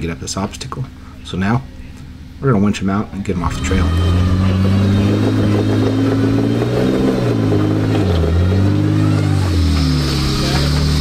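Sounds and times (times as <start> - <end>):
motor running under load: 3.4 - 11.0.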